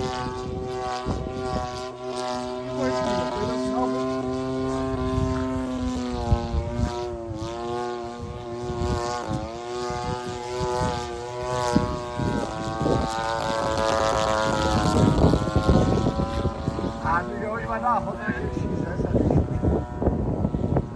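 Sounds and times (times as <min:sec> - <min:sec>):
model plane two-stroke engine: 0:00.0 - 0:20.9.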